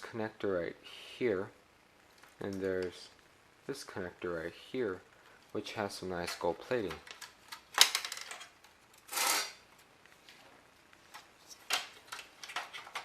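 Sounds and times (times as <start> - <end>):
small parts clicking and clinking: 6.3 - 9.6.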